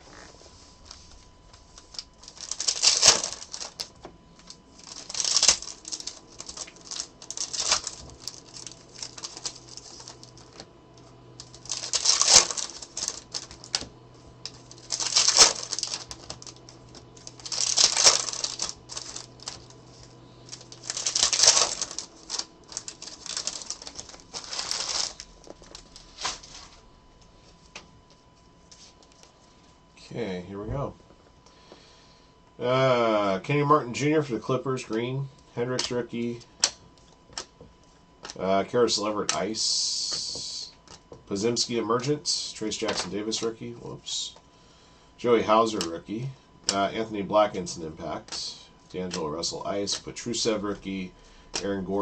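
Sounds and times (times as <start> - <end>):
plastic wrappers tearing and crinkling: 0.1 - 10.7, 11.4 - 26.8, 42.8 - 43.4.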